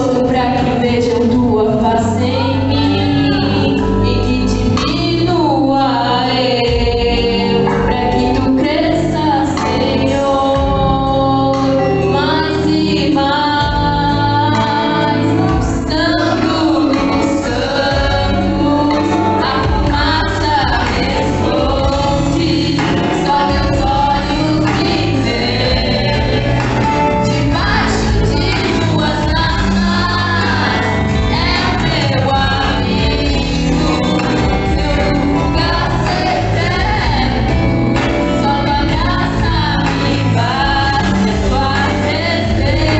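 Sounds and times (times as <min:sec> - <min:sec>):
choir singing a hymn: 0:00.0 - 0:42.9
instrumental accompaniment: 0:00.0 - 0:42.9.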